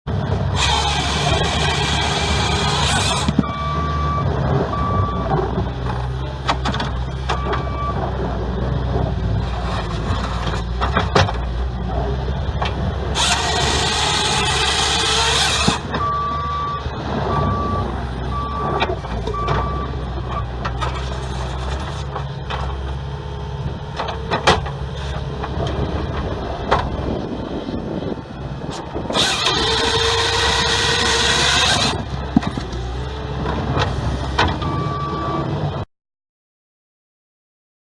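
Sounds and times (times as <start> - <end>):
engine running steadily: 0.1 - 35.8
saw cutting through log: 0.4 - 3.4, 9.4 - 11.0, 13.1 - 16.0, 28.7 - 33.2.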